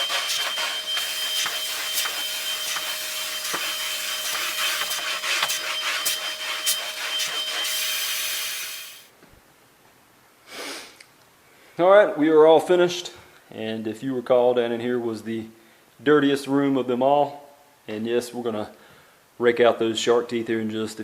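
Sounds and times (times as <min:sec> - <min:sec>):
extraction vacuum suction: 0:00.0 - 0:09.1.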